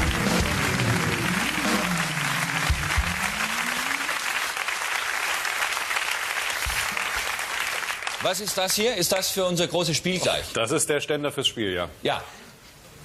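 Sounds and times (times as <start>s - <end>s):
band entrance music: 0.0s - 4.7s
audience applauding: 0.0s - 8.9s.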